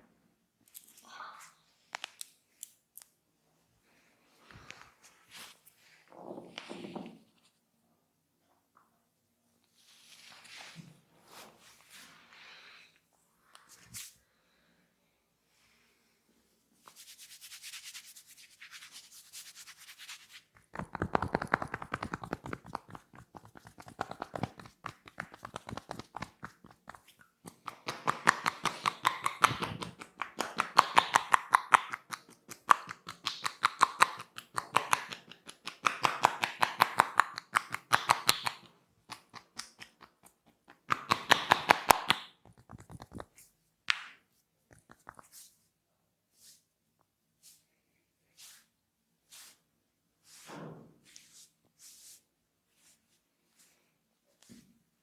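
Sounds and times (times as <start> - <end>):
soft rubbing: 16.8 - 27.5, 47.4 - 54.6
hands tapping and slapping head: 20.3 - 45.4.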